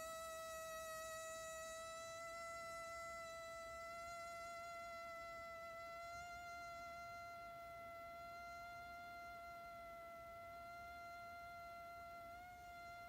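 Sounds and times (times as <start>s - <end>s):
balloon high-pitched buzzing: 0.0s - 7.6s.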